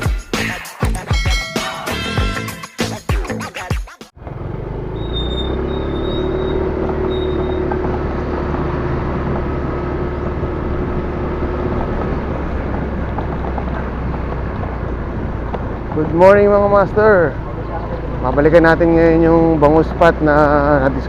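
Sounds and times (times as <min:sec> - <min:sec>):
road rumble: 0:04.2 - 0:21.0
vehicle engine hum: 0:04.2 - 0:21.0.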